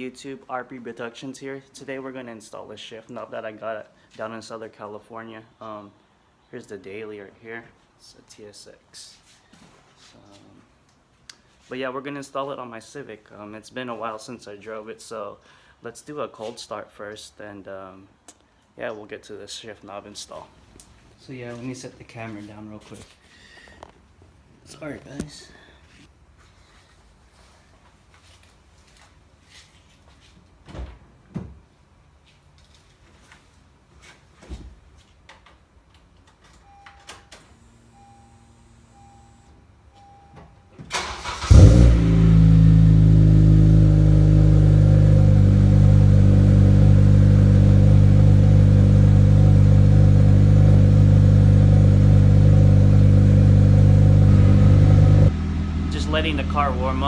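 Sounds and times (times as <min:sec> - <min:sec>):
car engine starting and idling: 0:40.9 - 0:57.0.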